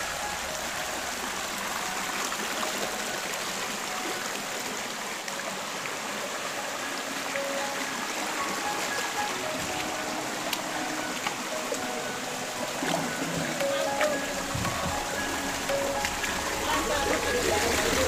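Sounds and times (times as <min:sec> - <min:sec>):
faint background music: 0:00.0 - 0:18.0
stream water flowing and splashing: 0:00.0 - 0:18.0.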